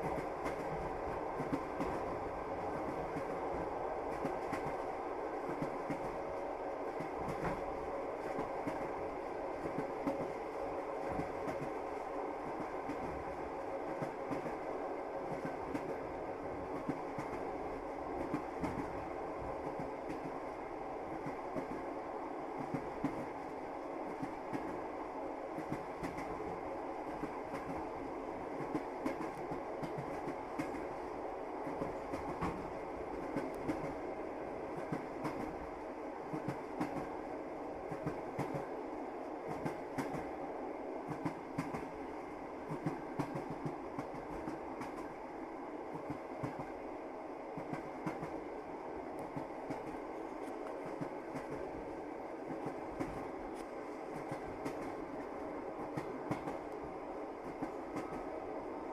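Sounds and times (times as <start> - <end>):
train wheels clacking on rails: 0.0 - 6.2, 6.9 - 10.4, 11.0 - 14.7, 16.7 - 17.5, 18.2 - 20.5, 22.6 - 23.4, 24.1 - 24.8, 25.5 - 27.9, 28.5 - 31.0, 31.6 - 34.1, 34.7 - 35.6, 36.3 - 37.2, 37.9 - 38.8, 39.5 - 40.3, 41.0 - 42.0, 42.6 - 45.2, 45.9 - 46.8, 47.5 - 48.4, 49.2 - 51.8, 52.5 - 56.8, 57.4 - 58.4
train running rumble: 0.0 - 58.9.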